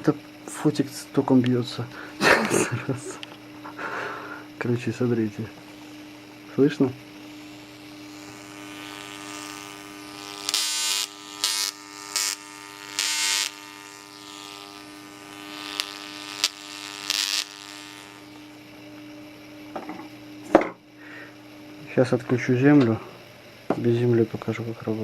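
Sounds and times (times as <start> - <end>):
tesla coil buzzing: 0.0 - 25.0
crackling spark discharges: 5.6 - 18.6.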